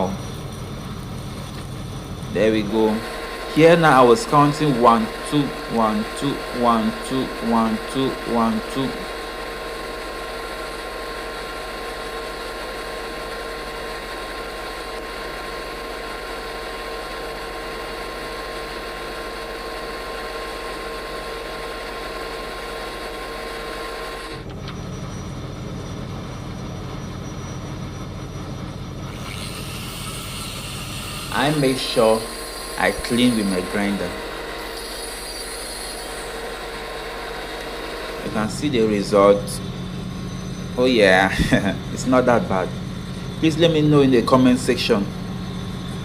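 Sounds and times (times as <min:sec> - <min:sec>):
welding arc hiss: 0:00.0 - 0:19.3, 0:29.1 - 0:39.0
electrical hum: 0:00.0 - 0:46.0.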